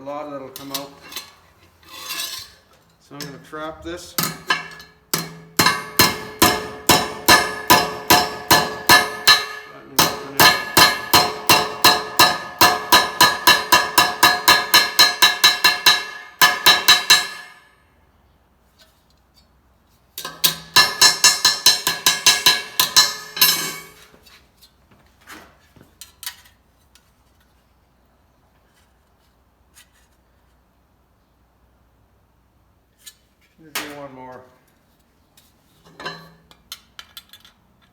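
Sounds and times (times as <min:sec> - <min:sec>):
hammer striking sheet metal: 0:04.2 - 0:17.7, 0:20.2 - 0:24.0.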